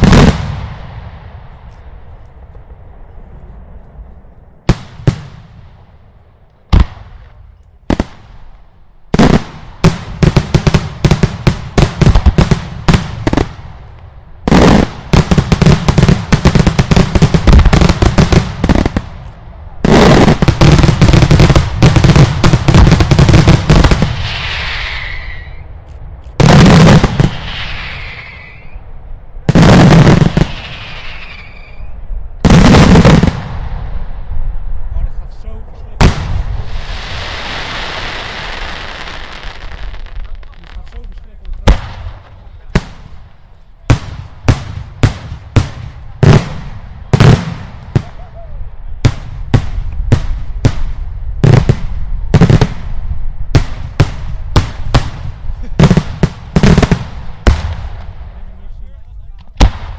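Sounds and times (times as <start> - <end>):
firework bangs: 0.0 - 2.5, 4.6 - 25.8, 26.4 - 28.8, 29.4 - 34.4, 36.0 - 58.6, 59.4 - 59.9
heavy firework blasts: 0.0 - 59.9
rapid-fire firework volleys: 9.2 - 13.8, 14.5 - 25.6, 53.5 - 59.9
falling firework hiss: 20.0 - 25.6, 26.4 - 28.8, 29.6 - 31.9, 36.1 - 43.1.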